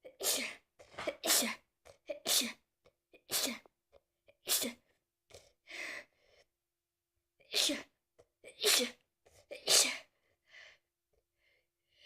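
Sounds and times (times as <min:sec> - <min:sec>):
person sneezing: 0:00.1 - 0:02.6, 0:08.6 - 0:10.1.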